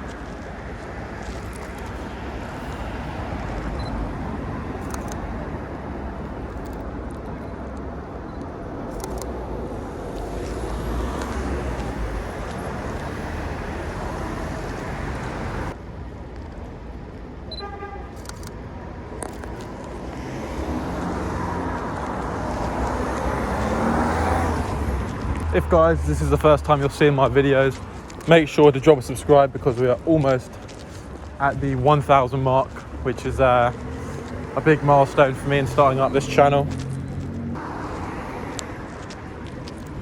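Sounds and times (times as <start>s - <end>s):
cars passing: 0.0s - 40.0s
car horn toot: 17.5s - 18.2s.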